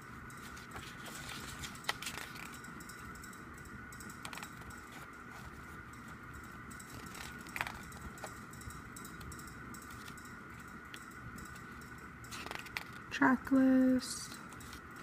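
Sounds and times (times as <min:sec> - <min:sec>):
steady faint hum: 0:00.0 - 0:15.0
paper pages rustling: 0:00.4 - 0:02.6, 0:12.3 - 0:13.0, 0:14.3 - 0:15.0.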